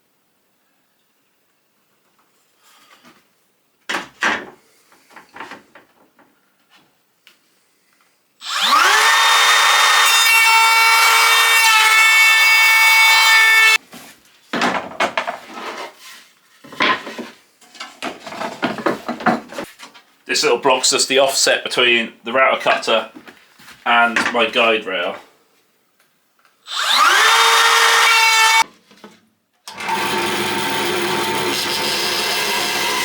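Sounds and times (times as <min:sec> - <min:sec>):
electric router whining: 0:08.4 - 0:13.8, 0:26.7 - 0:28.6, 0:29.7 - 0:33.0.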